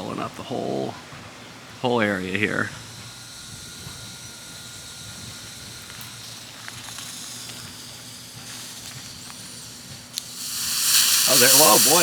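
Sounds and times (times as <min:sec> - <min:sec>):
smoke bomb hissing: 0:02.6 - 0:12.0.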